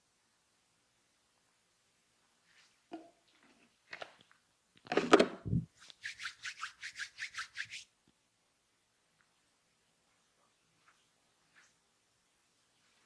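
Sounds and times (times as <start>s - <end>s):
hands rubbing over skin: 5.5s - 7.9s.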